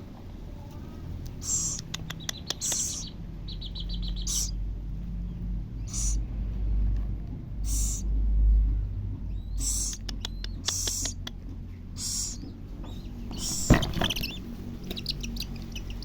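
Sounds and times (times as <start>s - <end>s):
sharp clicks: 1.2s - 3.1s, 9.7s - 11.4s
high chirps: 1.3s - 4.6s, 5.8s - 6.2s, 7.6s - 8.1s, 9.3s - 11.3s, 12.0s - 16.0s
owlet hissing begging calls: 1.3s - 4.6s, 5.8s - 6.3s, 7.6s - 8.1s, 9.6s - 11.2s, 12.0s - 12.5s, 13.3s - 16.0s
low rumble: 3.0s - 16.0s.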